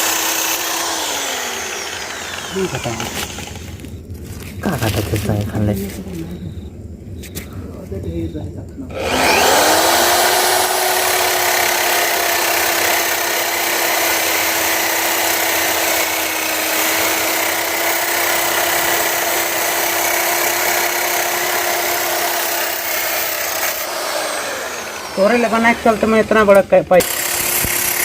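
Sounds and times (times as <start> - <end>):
electric drill motor whine: 0.0 - 4.4, 8.9 - 28.0
cutting disc grinding hiss: 1.0 - 3.9.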